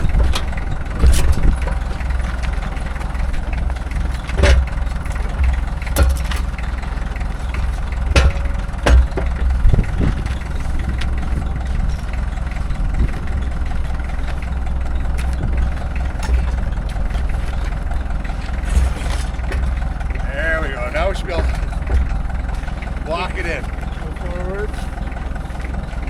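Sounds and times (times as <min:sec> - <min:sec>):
sharp metal knocks: 0:00.0 - 0:11.5, 0:20.7 - 0:22.7
tractor engine idling: 0:00.0 - 0:26.0.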